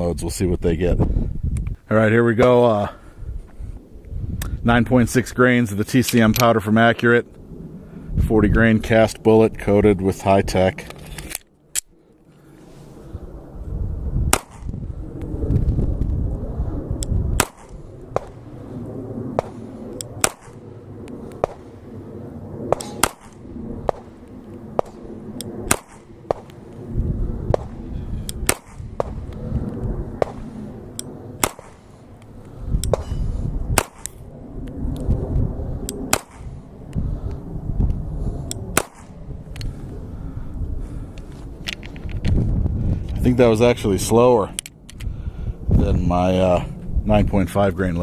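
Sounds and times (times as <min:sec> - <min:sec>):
wind rumbling on microphone: 0:00.0 - 0:48.0
sharp pistol shots: 0:14.3 - 0:14.7, 0:17.4 - 0:18.4, 0:20.2 - 0:20.6, 0:22.7 - 0:24.1, 0:25.6 - 0:26.5, 0:28.4 - 0:29.2, 0:31.4 - 0:31.9, 0:33.8 - 0:34.2, 0:36.1 - 0:36.5, 0:38.7 - 0:39.2.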